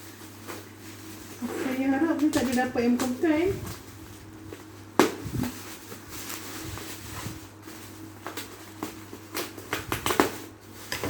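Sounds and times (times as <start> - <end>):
packaging rustling and clicking: 2.2 - 11.0.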